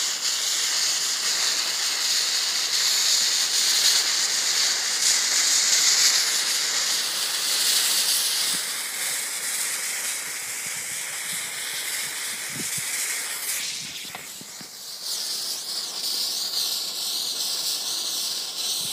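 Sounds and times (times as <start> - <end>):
fuse burning and hissing: 0.0 - 18.9.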